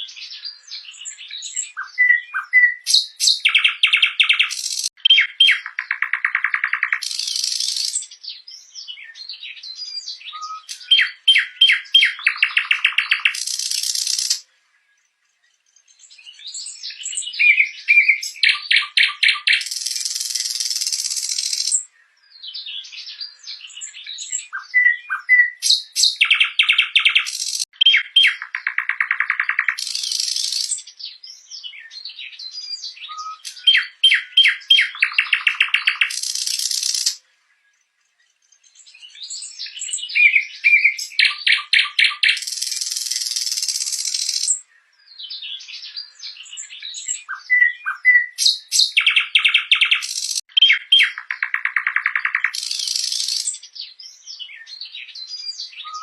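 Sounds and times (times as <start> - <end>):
nightingale singing: 0.0 - 56.0.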